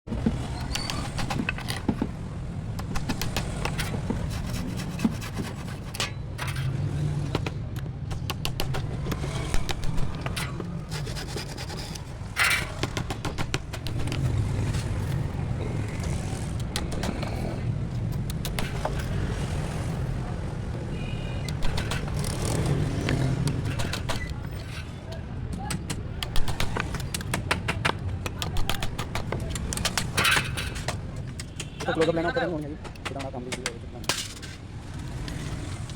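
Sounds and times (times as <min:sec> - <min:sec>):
tool scraping on wood: 0:00.1 - 0:20.0, 0:21.5 - 0:25.1.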